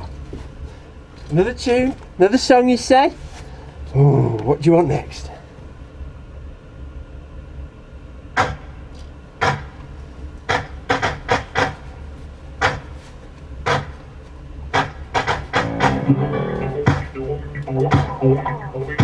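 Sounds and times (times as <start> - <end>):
steady low rumble: 0.0 - 19.0
sharp taps or knocks: 8.4 - 8.7, 9.4 - 9.8, 10.5 - 11.8, 12.6 - 12.9, 13.6 - 14.0.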